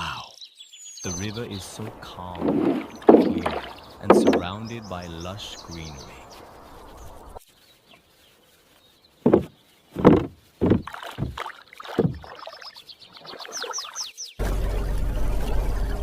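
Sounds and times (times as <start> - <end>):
bird chirping: 0.0 - 11.4, 12.0 - 16.0
oars dipping into water: 1.3 - 7.4, 9.1 - 14.2.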